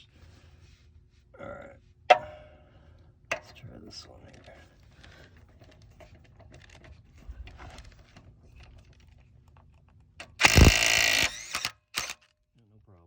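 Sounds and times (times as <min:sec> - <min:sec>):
impact wrench hammering: 0:02.1 - 0:02.6.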